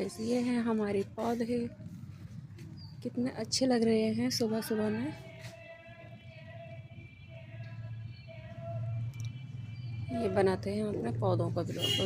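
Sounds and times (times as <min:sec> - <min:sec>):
faint music with held notes: 0:00.0 - 0:10.2.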